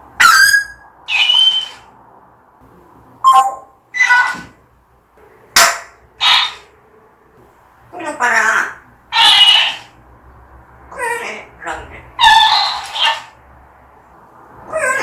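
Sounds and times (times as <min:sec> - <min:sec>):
parrot squawking and whistling: 0:00.2 - 0:01.9, 0:03.2 - 0:04.5, 0:05.6 - 0:06.7, 0:08.2 - 0:09.9, 0:12.2 - 0:13.4.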